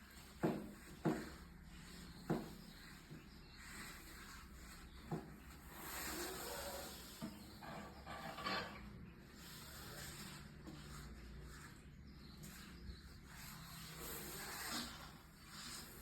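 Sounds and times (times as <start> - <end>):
snake hissing: 5.7 - 7.2.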